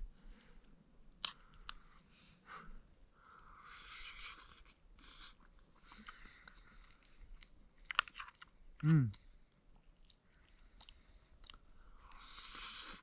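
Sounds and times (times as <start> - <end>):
person chewing: 1.1 - 2.0, 3.7 - 13.0.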